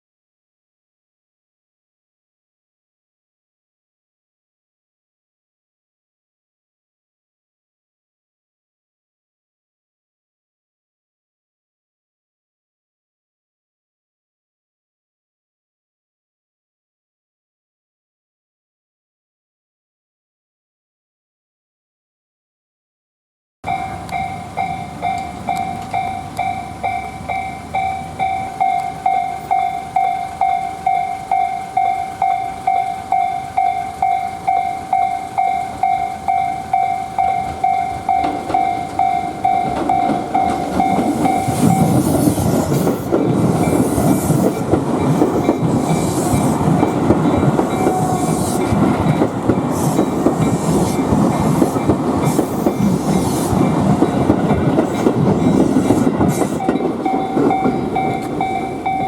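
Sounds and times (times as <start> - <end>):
level crossing bell ringing: 23.6 - 41.9, 46.9 - 49.4, 56.6 - 59.0
train wheels clattering on track: 23.6 - 59.0.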